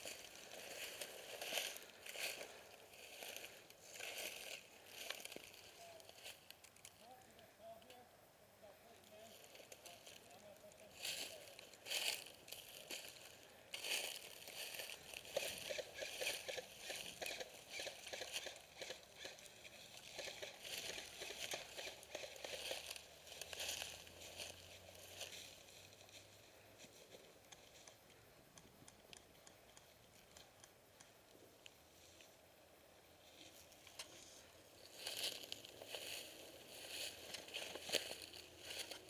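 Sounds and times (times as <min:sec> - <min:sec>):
footsteps through dry leaves: 0:00.0 - 0:06.5, 0:09.3 - 0:26.6, 0:34.3 - 0:39.0.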